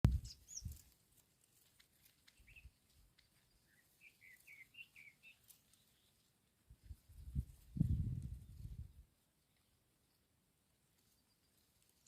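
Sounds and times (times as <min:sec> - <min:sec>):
faint bird chirping: 0:00.1 - 0:00.8, 0:02.2 - 0:06.3, 0:08.4 - 0:12.0.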